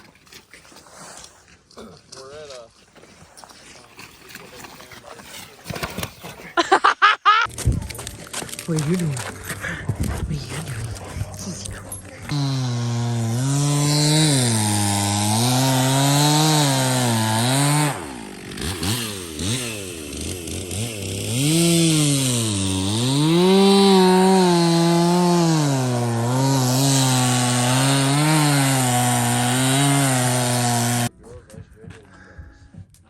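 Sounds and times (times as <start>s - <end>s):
small engine revving: 12.2s - 31.1s.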